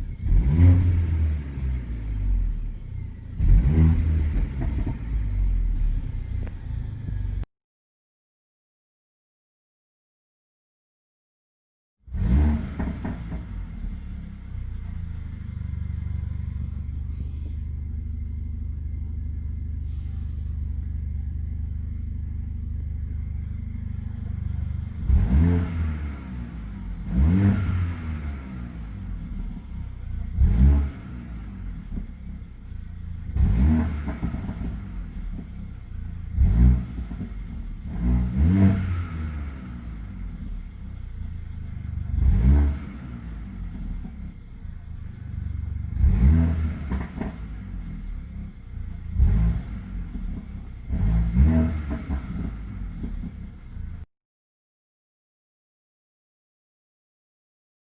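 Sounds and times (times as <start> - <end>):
engine revving with crackles: 0.0 - 7.4, 12.1 - 17.5, 24.0 - 54.0
car engine starting and idling: 0.0 - 7.5, 12.1 - 54.1.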